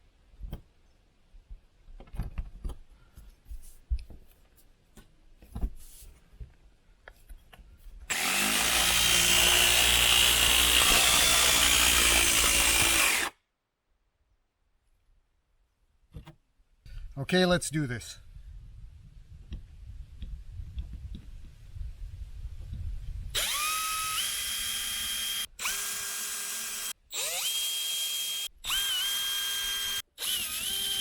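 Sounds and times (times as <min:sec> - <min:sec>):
jigsaw cutting sheet metal: 0:08.1 - 0:13.3, 0:23.4 - 0:31.0.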